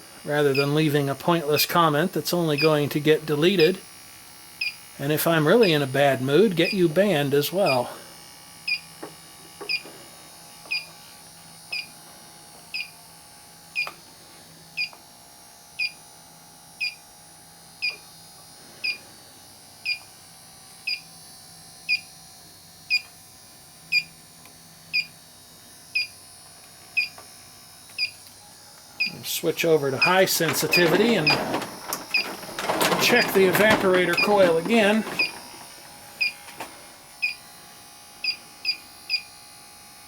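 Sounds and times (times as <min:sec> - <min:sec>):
leak detector beeping: 0:00.5 - 0:01.0, 0:02.6 - 0:02.8, 0:03.5 - 0:03.8, 0:04.6 - 0:04.8, 0:05.4 - 0:06.0, 0:06.6 - 0:07.0, 0:07.7 - 0:08.0, 0:08.7 - 0:08.9, 0:09.6 - 0:09.9, 0:10.7 - 0:11.0, 0:11.7 - 0:12.0, 0:12.7 - 0:13.0, 0:13.8 - 0:14.0, 0:14.8 - 0:15.0, 0:15.8 - 0:16.0, 0:16.8 - 0:17.0, 0:17.8 - 0:18.0, 0:18.8 - 0:19.0, 0:19.8 - 0:20.1, 0:20.9 - 0:21.1, 0:21.9 - 0:22.1, 0:22.9 - 0:23.1, 0:23.9 - 0:24.1, 0:24.9 - 0:25.2, 0:26.0 - 0:26.2, 0:27.0 - 0:27.2, 0:27.9 - 0:28.2, 0:29.0 - 0:35.6, 0:36.2 - 0:36.5, 0:37.2 - 0:37.5, 0:38.2 - 0:39.3.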